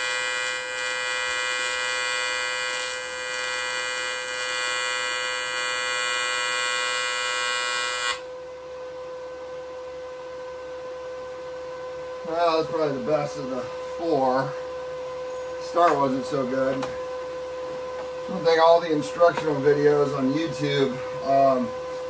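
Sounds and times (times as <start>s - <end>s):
welder humming: 0.0s - 8.3s, 12.2s - 22.0s
welding arc buzzing: 0.0s - 8.3s.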